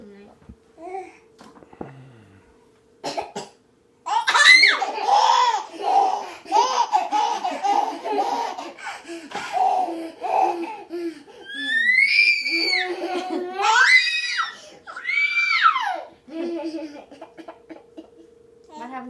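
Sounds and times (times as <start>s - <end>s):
baby laughing: 4.1s - 11.2s.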